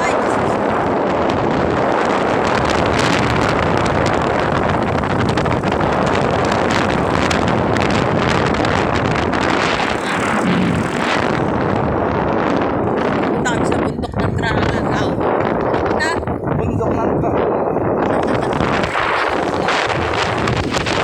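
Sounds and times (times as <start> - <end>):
wind rushing over microphone: 0.0 - 21.0.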